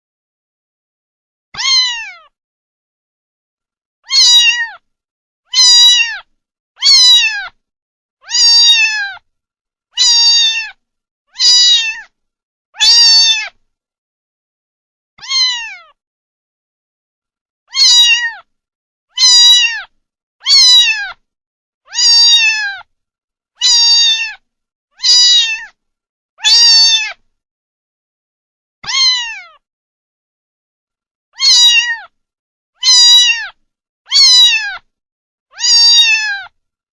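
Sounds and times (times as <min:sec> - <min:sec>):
kitten meowing: 0:01.6 - 0:02.3, 0:04.0 - 0:04.8, 0:05.5 - 0:07.6, 0:08.2 - 0:09.2, 0:10.0 - 0:12.1, 0:12.8 - 0:13.6, 0:15.2 - 0:16.0, 0:17.7 - 0:18.5, 0:19.1 - 0:21.2, 0:21.9 - 0:22.9, 0:23.6 - 0:24.4, 0:25.0 - 0:25.8, 0:26.4 - 0:27.2, 0:28.8 - 0:29.6, 0:31.4 - 0:32.2, 0:32.8 - 0:34.9, 0:35.5 - 0:36.6.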